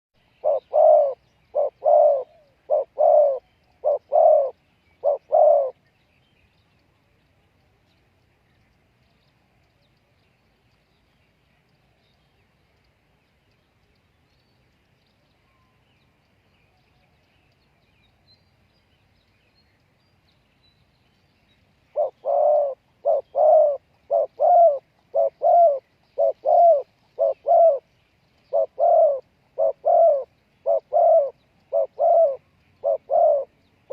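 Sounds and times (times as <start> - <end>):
dove cooing: 0.2 - 5.8, 21.9 - 27.9, 28.5 - 33.9.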